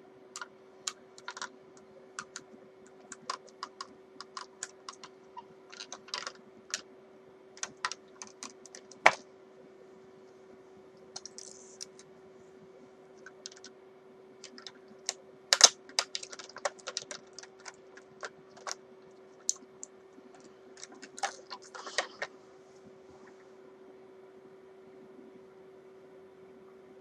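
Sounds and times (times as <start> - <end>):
low background hum: 0.0 - 27.0
small guitar parts and tools clicking: 0.4 - 1.5, 5.7 - 6.8, 15.5 - 18.8.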